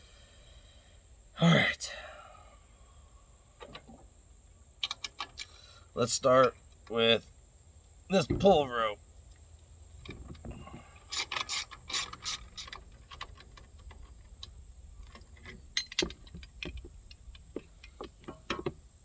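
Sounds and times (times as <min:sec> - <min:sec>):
hand tools clicking and clattering: 0:10.0 - 0:18.9
quick ratchet-like clicks: 0:11.0 - 0:17.4.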